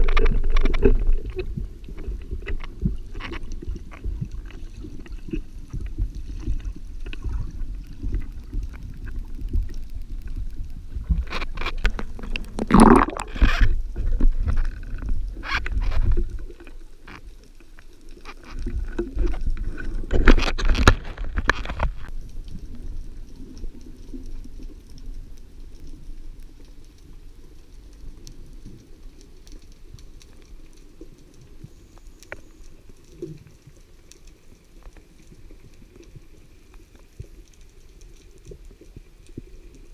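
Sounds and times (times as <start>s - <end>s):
water splashing and bubbling: 0.0s - 31.6s
underwater rumble with crackling: 0.0s - 39.9s.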